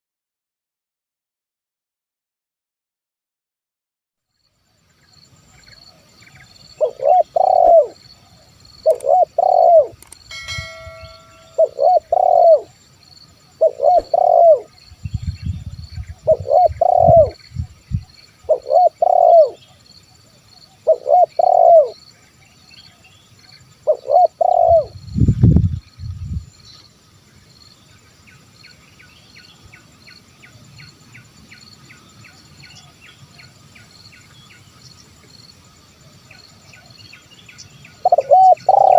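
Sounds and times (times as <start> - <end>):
insects chirring: 4.3 - 38.9
dove cooing: 6.7 - 12.8, 13.6 - 14.8, 16.1 - 17.4, 18.5 - 19.6, 20.8 - 22.0, 23.8 - 25.0, 38.0 - 38.9.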